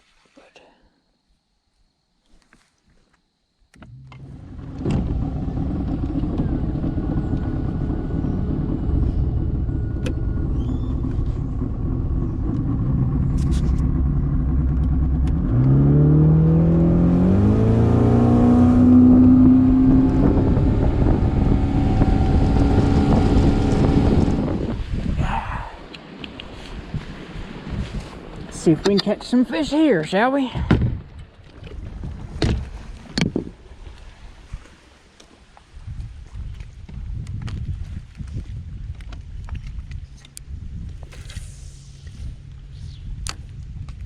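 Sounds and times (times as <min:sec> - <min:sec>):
small boat motor running: 0:03.8 - 0:24.9.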